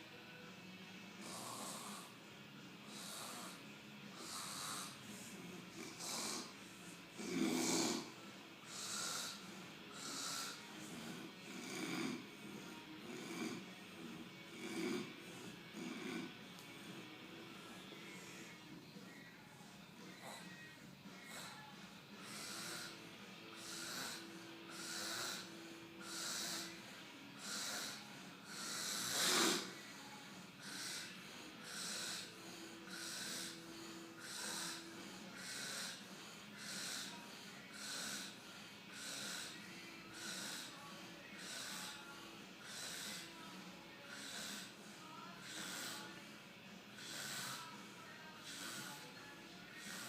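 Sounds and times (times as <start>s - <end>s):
loud sharp snort: 1.2s - 2.2s, 2.9s - 12.3s, 22.2s - 23.0s, 23.6s - 26.8s, 27.4s - 29.8s, 30.6s - 37.1s, 37.7s - 40.7s, 42.6s - 43.3s, 44.1s - 44.8s, 45.4s - 46.1s, 47.0s - 47.7s
man snoring loudly: 1.2s - 2.2s, 2.9s - 17.1s, 20.1s - 46.2s, 47.0s - 50.0s.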